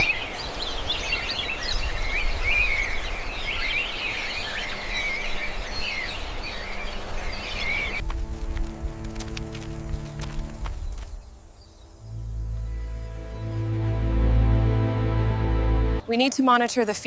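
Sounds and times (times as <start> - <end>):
small birds chirping: 0.0 - 13.6
music with sustained notes: 7.8 - 16.0.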